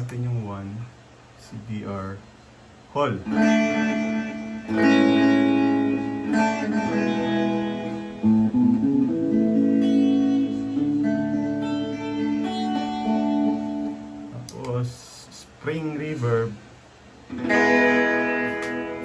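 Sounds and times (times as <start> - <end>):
guitar chords with reverb: 3.2 - 14.8, 17.3 - 19.0.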